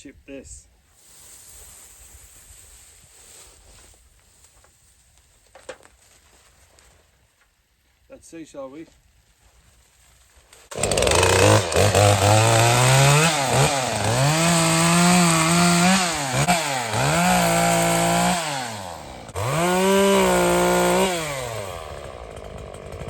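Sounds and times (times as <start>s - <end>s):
wood chipper engine labouring: 10.7s - 23.0s.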